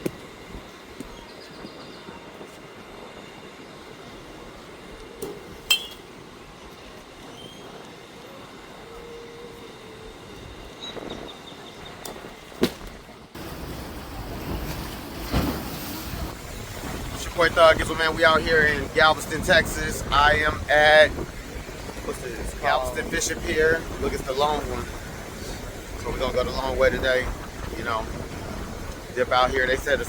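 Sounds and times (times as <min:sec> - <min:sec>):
steady mechanical rumble: 0:00.0 - 0:30.0
wind buffeting microphone: 0:00.0 - 0:30.0
baseball bat cracks: 0:12.6 - 0:13.0.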